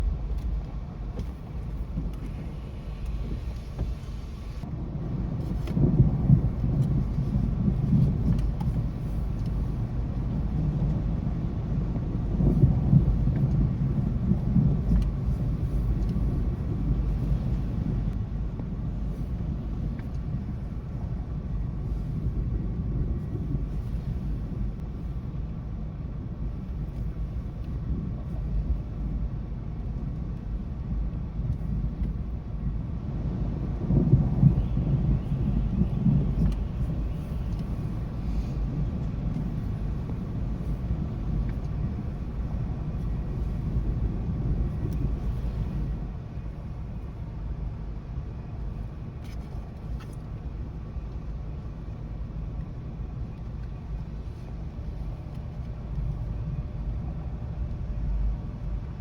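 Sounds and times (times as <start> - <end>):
thunder rumbling: 0.0 - 49.2.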